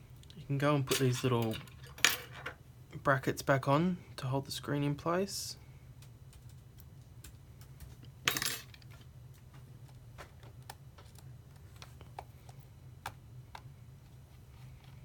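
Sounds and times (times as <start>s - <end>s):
small metal parts clinking: 8.2s - 8.8s.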